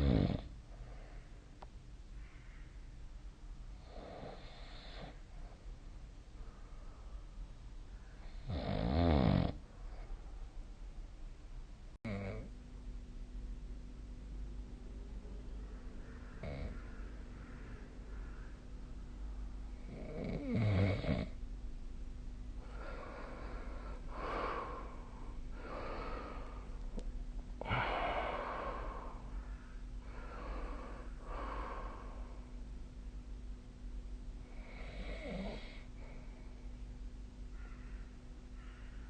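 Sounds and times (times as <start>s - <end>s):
person snoring: 0.0s - 0.5s, 8.3s - 9.6s, 27.6s - 29.2s, 34.5s - 35.8s
low hum: 9.6s - 20.0s, 21.3s - 34.8s.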